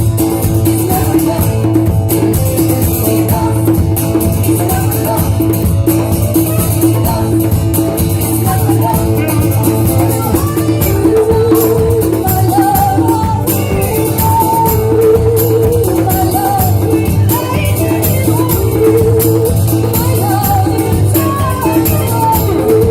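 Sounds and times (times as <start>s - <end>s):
guitar: 0.0s - 22.9s
percussion: 0.0s - 22.9s
person singing: 0.0s - 22.9s.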